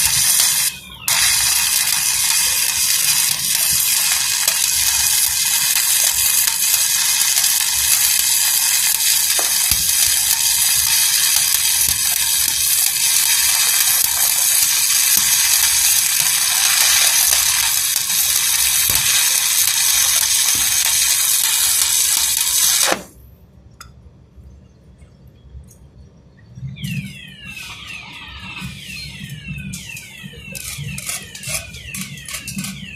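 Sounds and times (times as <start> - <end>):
arc welding crackling hiss: 0.0 - 23.2.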